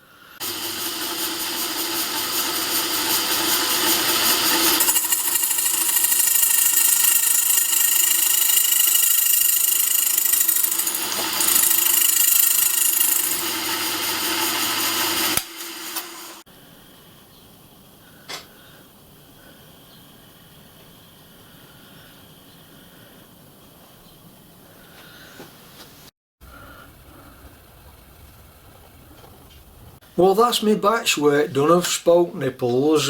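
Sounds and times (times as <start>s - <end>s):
machine tool whining: 2.9s - 15.5s
machine hum: 26.4s - 30.0s.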